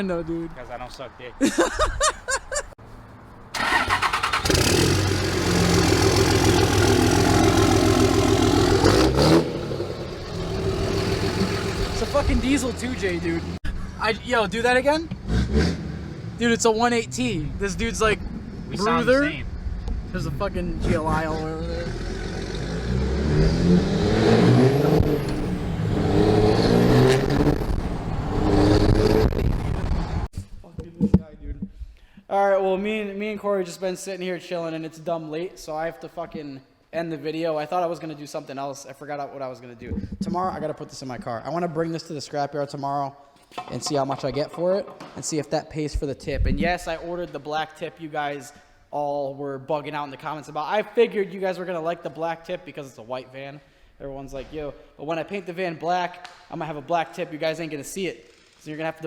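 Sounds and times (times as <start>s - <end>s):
car engine cranking and running: 3.6s - 13.6s
car engine revving: 3.6s - 13.6s, 14.7s - 18.8s, 20.8s - 30.3s.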